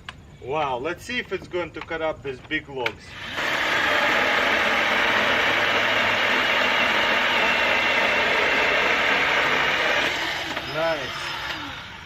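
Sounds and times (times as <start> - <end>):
electric chainsaw cutting log: 3.1 - 12.0.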